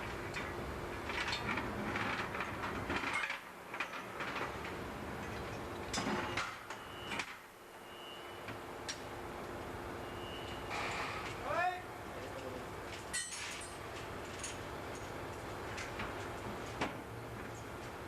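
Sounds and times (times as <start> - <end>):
machinery hum: 0.0 - 18.0
metal tools clanking and scraping: 13.1 - 15.2.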